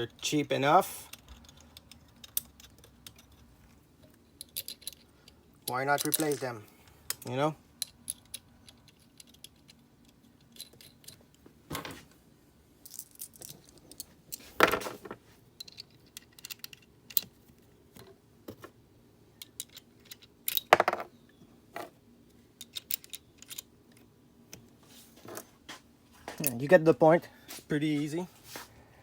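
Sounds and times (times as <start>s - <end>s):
small metal hardware clinking: 4.4s - 5.4s, 6.0s - 11.3s.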